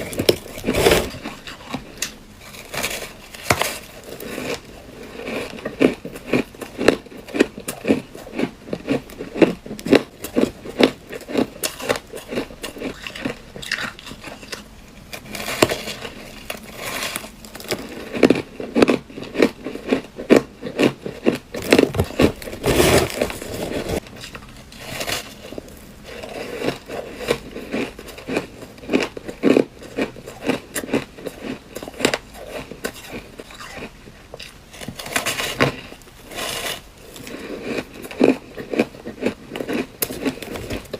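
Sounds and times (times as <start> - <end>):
person crunching ice: 15.2 - 40.9.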